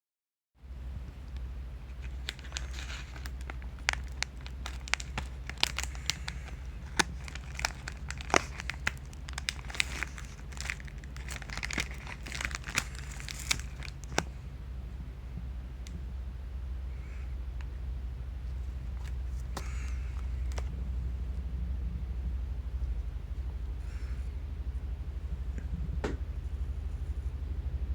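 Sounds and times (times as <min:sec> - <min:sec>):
steady low hum: 0:00.6 - 0:27.9
plastic wrappers crinkling and tearing: 0:01.8 - 0:14.3, 0:18.9 - 0:20.7.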